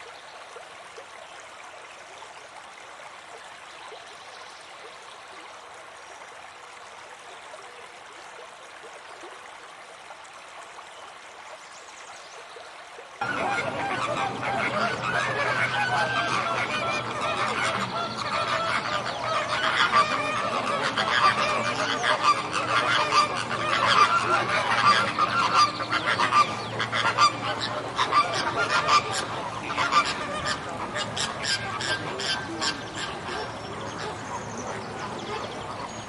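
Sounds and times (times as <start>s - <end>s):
geese honking: 13.2s - 36.0s.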